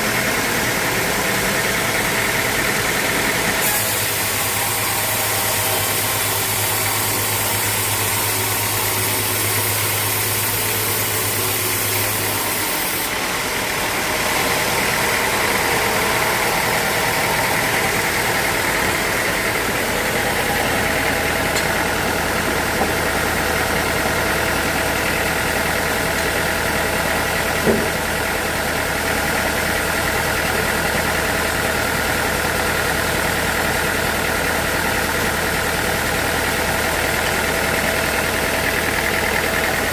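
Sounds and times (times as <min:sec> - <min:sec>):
sawmill motor hum with whine: 0:00.0 - 0:39.9
short knock: 0:27.6 - 0:28.0.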